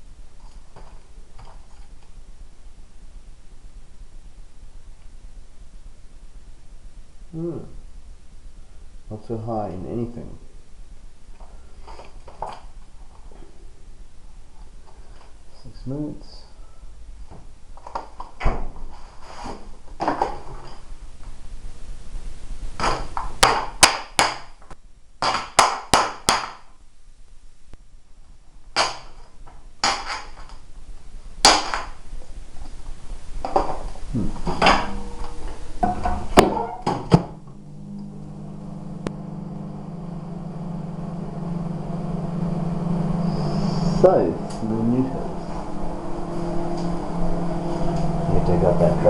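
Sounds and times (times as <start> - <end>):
microwave oven humming: 33.9 - 49.0.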